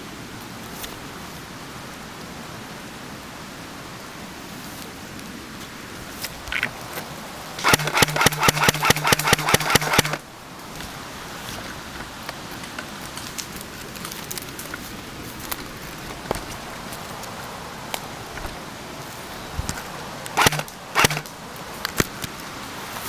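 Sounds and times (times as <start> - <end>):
small ticks and rustles: 0.3 - 3.4, 4.4 - 8.2, 9.9 - 23.0
airsoft gun firing full auto: 7.6 - 10.2, 20.4 - 21.3.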